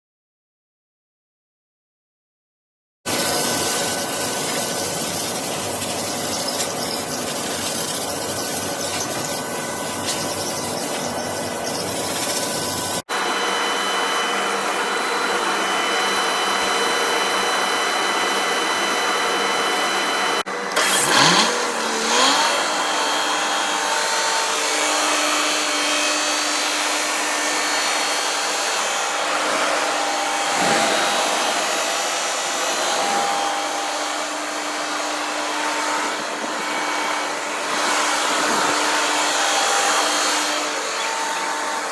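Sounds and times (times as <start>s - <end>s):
generator engine running: 18.4s - 25.5s.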